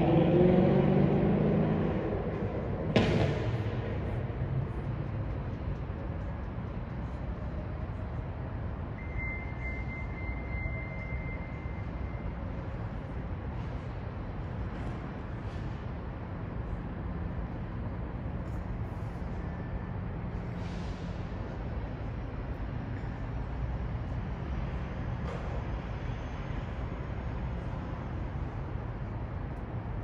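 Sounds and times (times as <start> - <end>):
city traffic rumble: 0.0 - 30.0.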